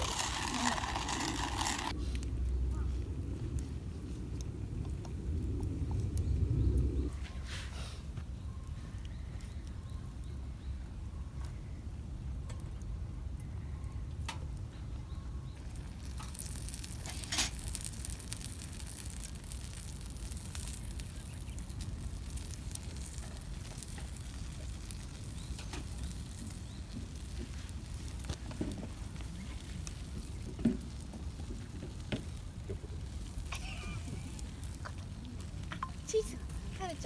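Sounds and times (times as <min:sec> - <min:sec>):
campfire crackling and popping: 0:00.0 - 0:02.4, 0:15.6 - 0:37.0.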